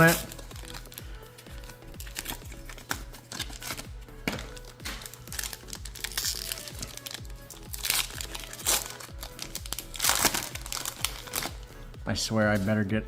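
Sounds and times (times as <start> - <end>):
foil wrapper crinkling: 0.0 - 11.7
background music with beat: 0.0 - 13.0.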